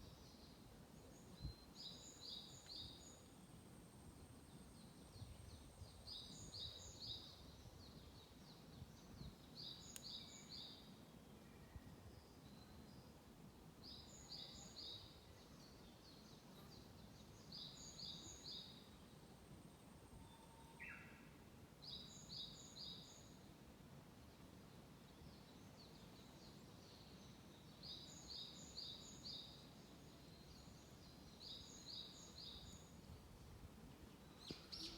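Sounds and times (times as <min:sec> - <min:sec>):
small songbird singing: 0:00.0 - 0:03.5, 0:04.5 - 0:13.2, 0:13.8 - 0:19.2, 0:20.3 - 0:23.5, 0:24.6 - 0:33.2, 0:34.0 - 0:34.9.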